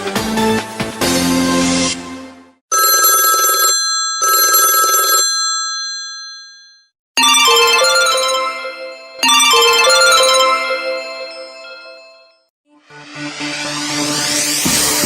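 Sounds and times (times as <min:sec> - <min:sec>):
melodic ringtone: 0:02.7 - 0:05.4, 0:07.2 - 0:12.5
telephone bell ringtone: 0:02.7 - 0:12.5.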